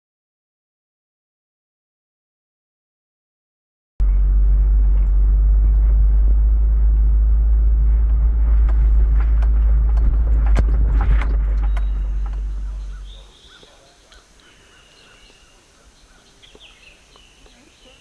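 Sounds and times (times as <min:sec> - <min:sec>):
loud steady low rumble: 0:04.0 - 0:13.4
clicks and knocks: 0:07.8 - 0:13.2.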